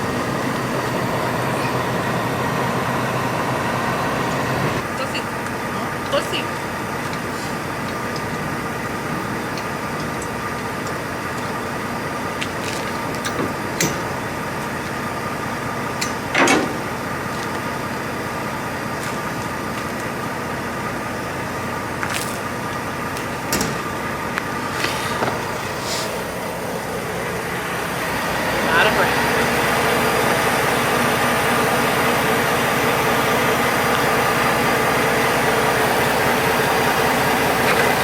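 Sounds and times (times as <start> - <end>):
diesel truck engine idling: 0.0 - 38.0
short knocks and clanks: 12.4 - 15.0, 15.9 - 17.6, 23.2 - 24.0.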